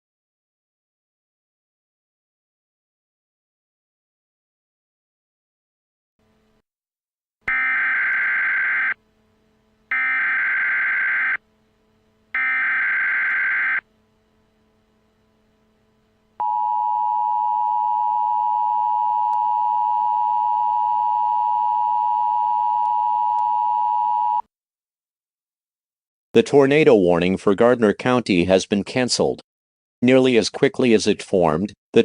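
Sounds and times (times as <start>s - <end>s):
digital alert header bursts: 7.5s - 9.0s, 9.9s - 11.4s, 12.4s - 13.8s.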